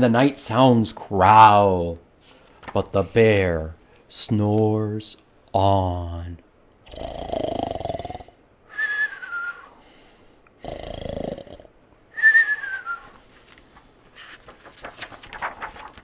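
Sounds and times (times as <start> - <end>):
person imitating snoring: 6.8 - 8.4, 10.6 - 11.7
falling whistle: 8.7 - 9.8, 12.1 - 13.2.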